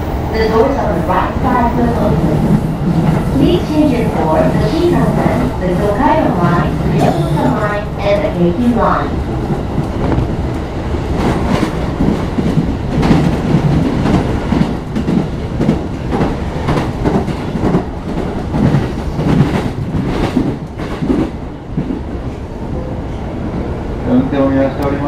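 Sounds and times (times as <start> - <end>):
train wheels rumbling on rail: 0.0 - 25.0.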